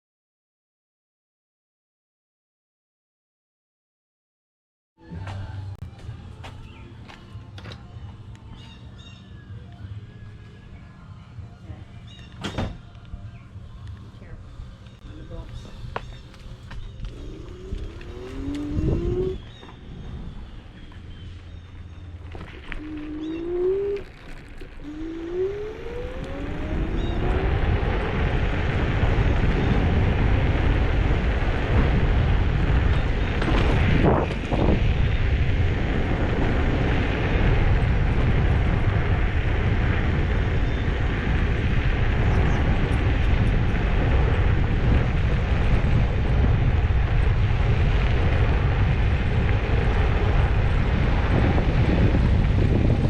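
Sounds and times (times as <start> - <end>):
wind rushing over microphone: 11.3 - 53.0
electric motor whine: 16.9 - 21.1, 22.0 - 46.6.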